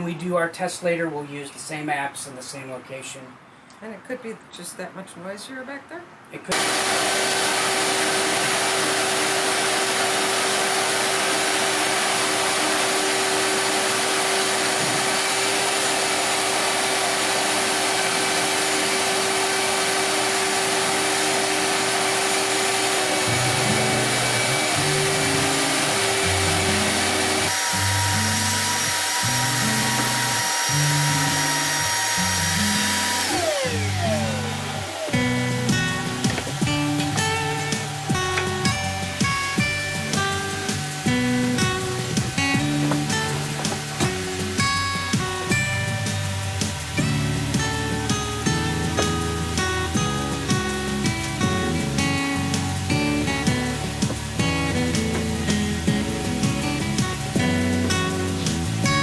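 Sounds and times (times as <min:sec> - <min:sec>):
machine whirring: 0:06.5 - 0:59.0
music with plucked bass line: 0:23.1 - 0:31.8, 0:32.4 - 0:59.0.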